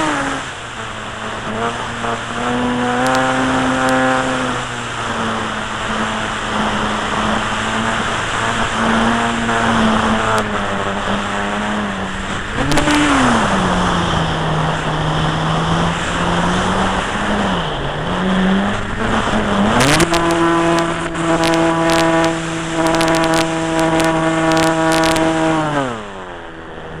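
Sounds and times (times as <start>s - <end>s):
model airplane motor whining: 0.0s - 27.0s
wind rush: 0.1s - 26.2s
clicks: 19.8s - 25.3s.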